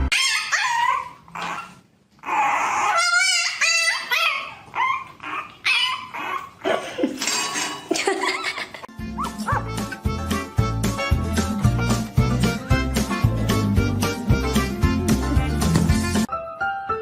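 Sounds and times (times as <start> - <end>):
dog giving high wavering calls: 0.1 - 6.6.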